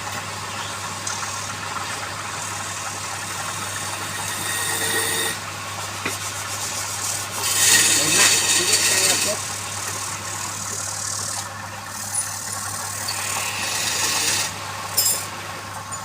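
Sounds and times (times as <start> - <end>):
steady machine hum: 0.0 - 16.0
tool scraping across wood: 3.8 - 5.4, 6.0 - 9.4, 13.1 - 14.6.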